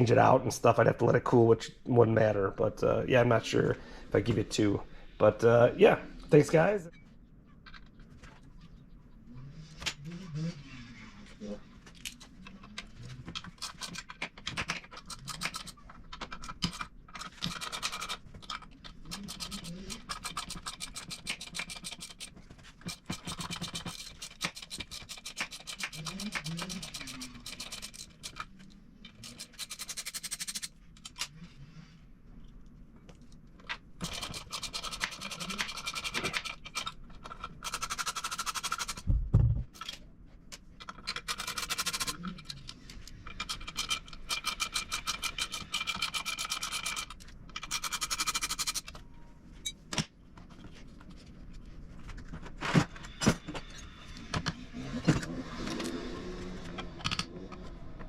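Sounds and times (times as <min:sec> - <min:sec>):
hand tools scratching and clicking: 0:12.0 - 0:31.4, 0:34.0 - 0:39.0, 0:40.8 - 0:49.0
heavy low thump: 0:39.1 - 0:39.7.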